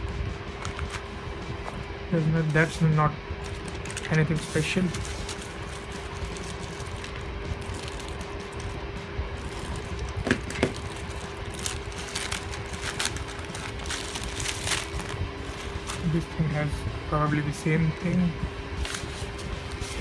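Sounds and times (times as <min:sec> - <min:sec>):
steady hum: 0:00.0 - 0:20.0
plastic packets rustling: 0:02.5 - 0:08.8, 0:09.4 - 0:16.2.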